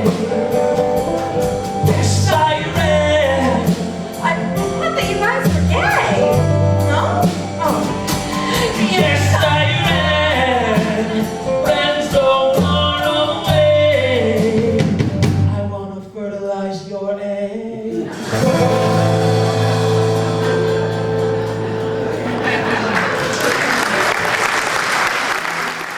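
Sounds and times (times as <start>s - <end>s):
guitar accompaniment: 0.0s - 16.2s, 17.9s - 25.9s
man singing: 0.0s - 20.9s.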